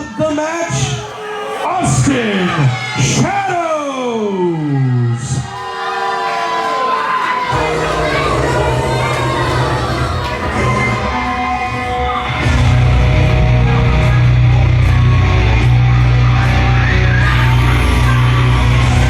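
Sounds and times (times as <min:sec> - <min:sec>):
heavy rock music: 0:07.5 - 0:19.0.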